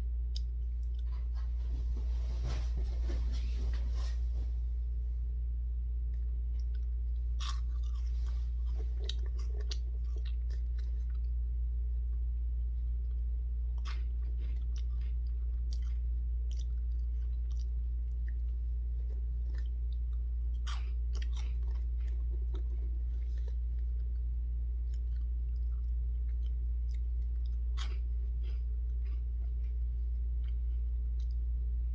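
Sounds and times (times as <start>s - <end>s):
steady low hum: 0.0s - 31.9s
person chewing crunchy snacks: 6.1s - 11.5s, 12.8s - 31.8s.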